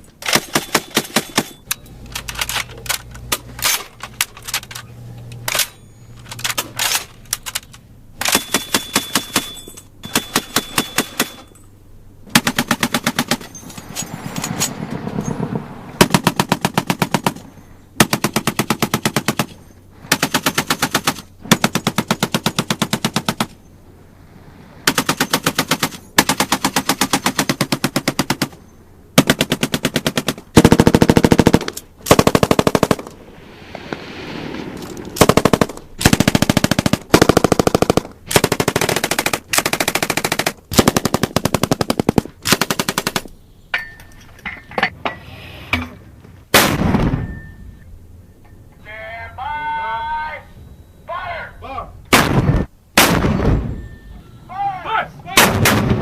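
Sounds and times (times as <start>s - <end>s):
automatic gunfire bursts: 29.2s - 33.1s, 35.2s - 43.2s
gunfire echo: 46.5s - 47.5s, 52.1s - 53.9s, 55.4s - 56.0s.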